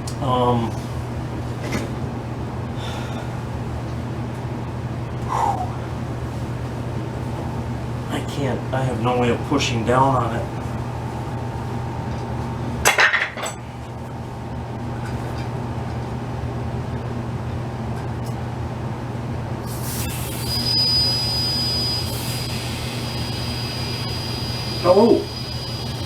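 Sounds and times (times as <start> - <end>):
compressed air hissing: 19.6 - 26.0
low hum: 19.6 - 26.0.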